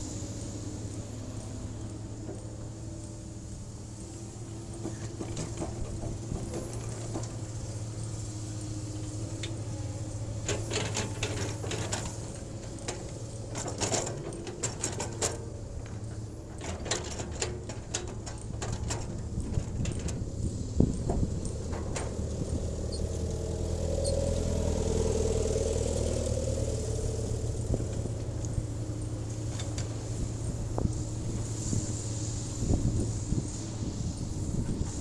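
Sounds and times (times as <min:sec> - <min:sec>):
diesel engine running: 0:00.0 - 0:35.0
metal clanks and rattles: 0:10.4 - 0:22.5.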